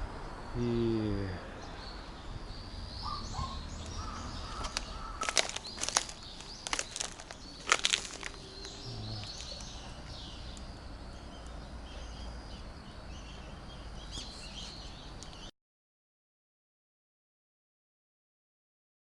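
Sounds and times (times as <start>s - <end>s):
low outdoor rumble: 0.0s - 15.3s
small birds chirping: 0.4s - 15.5s.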